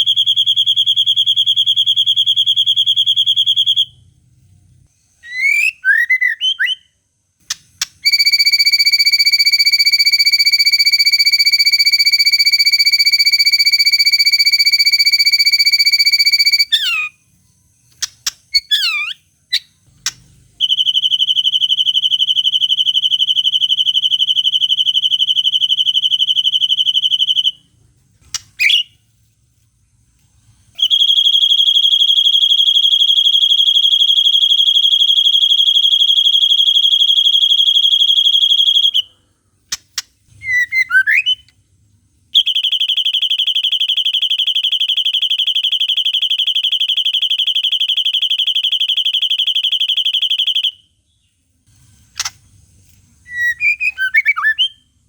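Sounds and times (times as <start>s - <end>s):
bird whistled chirps: 5.2s - 7.0s, 8.0s - 17.2s, 17.8s - 27.6s, 28.3s - 29.0s, 30.8s - 39.1s, 40.4s - 41.5s, 53.2s - 54.9s.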